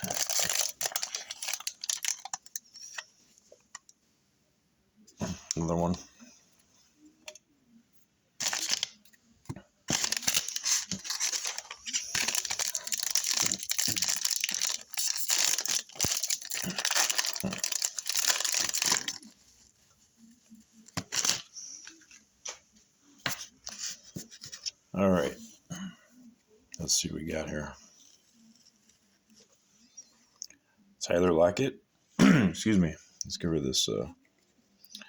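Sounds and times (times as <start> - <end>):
wrapper tearing and crinkling: 0.0 - 2.6, 8.4 - 9.0, 9.9 - 19.4, 21.0 - 21.5.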